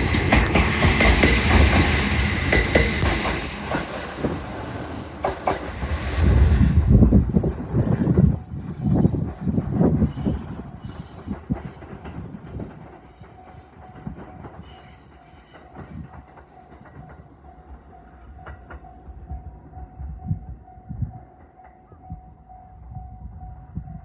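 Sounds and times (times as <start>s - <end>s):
train wheels clacking over rail joints: 0.0s - 19.2s.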